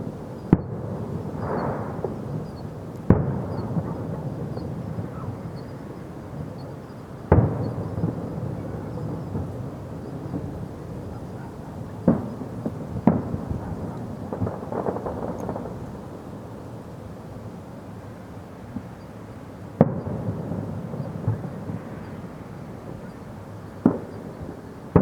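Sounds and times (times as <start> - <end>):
firework bangs: 0.0 - 16.6, 19.7 - 25.0
firework crackling: 0.0 - 16.8.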